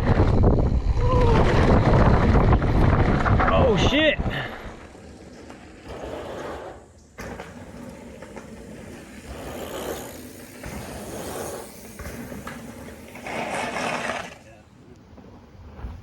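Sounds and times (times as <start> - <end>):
wind noise on microphone: 0.0 - 4.9, 15.3 - 16.0
bike tyres rolling on dirt: 0.0 - 16.0.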